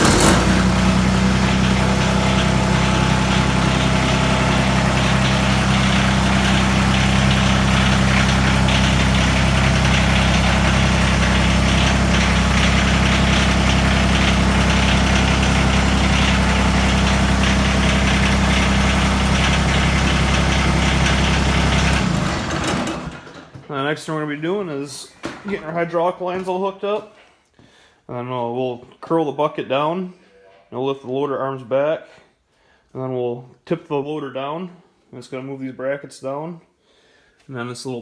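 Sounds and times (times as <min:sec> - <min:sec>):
tractor diesel engine droning: 0:00.0 - 0:23.6.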